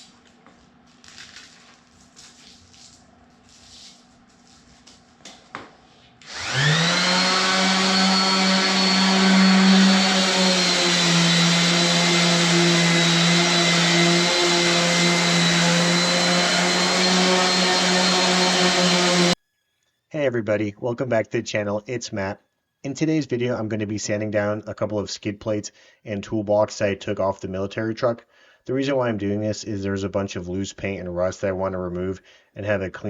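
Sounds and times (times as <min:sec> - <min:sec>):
electric sander whining: 0:06.2 - 0:19.4.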